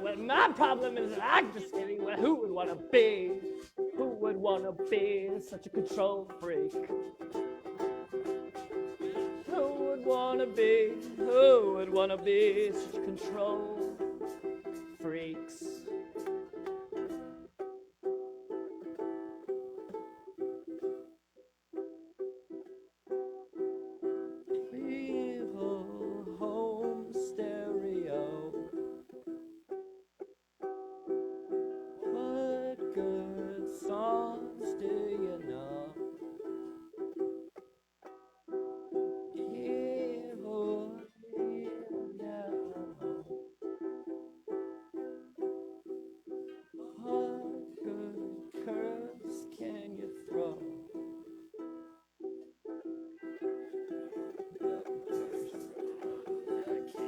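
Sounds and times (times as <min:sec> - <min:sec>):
person singing wordless phrases: 0:00.0 - 0:17.6, 0:24.5 - 0:29.1, 0:32.0 - 0:36.7, 0:38.9 - 0:43.5, 0:46.5 - 0:51.3, 0:53.2 - 0:57.0.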